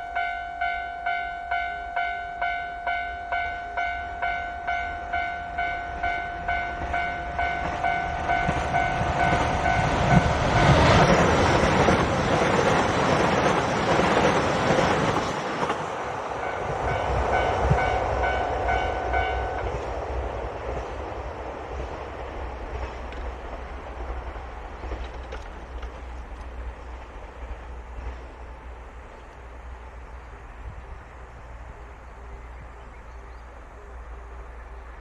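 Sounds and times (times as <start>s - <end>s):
level-crossing alarm bell: 0.0s - 10.8s, 16.4s - 19.7s
diesel train passing: 0.0s - 35.0s.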